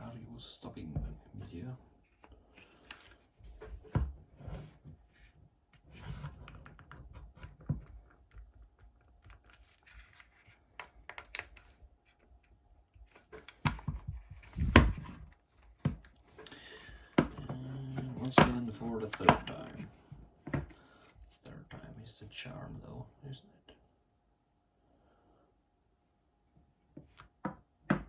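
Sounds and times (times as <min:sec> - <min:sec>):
hands handling plastic and metal parts: 0:02.0 - 0:04.0, 0:04.6 - 0:19.9.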